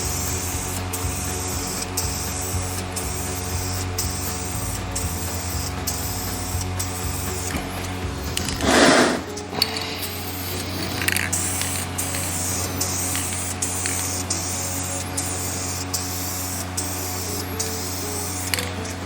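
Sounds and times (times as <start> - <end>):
low hum: 0.0 - 15.6
spray gun hissing: 0.0 - 19.0.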